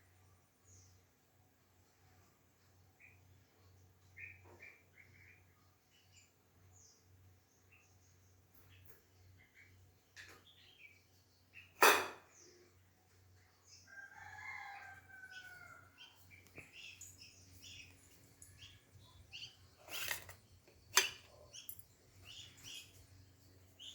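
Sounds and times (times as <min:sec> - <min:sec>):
small birds chirping: 0:00.0 - 0:23.9
rooster crowing: 0:13.9 - 0:16.2.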